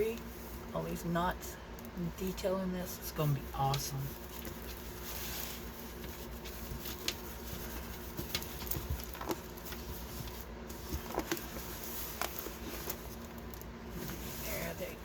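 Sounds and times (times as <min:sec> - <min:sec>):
canvas crackling as unrolled: 0:03.9 - 0:15.0.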